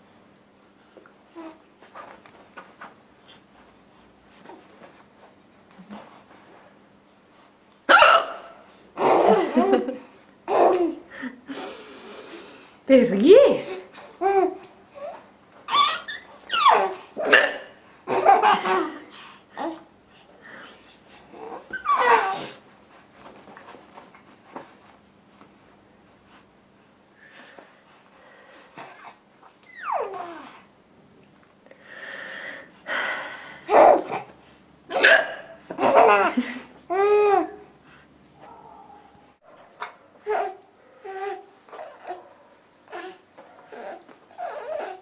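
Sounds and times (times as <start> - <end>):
baby laughing: 9.0 - 11.1, 15.7 - 17.4, 18.1 - 19.8, 33.7 - 34.2, 35.7 - 37.6.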